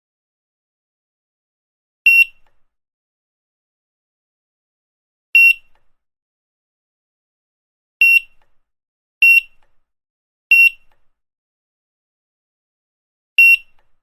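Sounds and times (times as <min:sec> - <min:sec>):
barcode scanner beeping: 0:02.1 - 0:02.4, 0:08.0 - 0:08.4, 0:09.2 - 0:09.6, 0:10.5 - 0:10.9, 0:13.4 - 0:13.9.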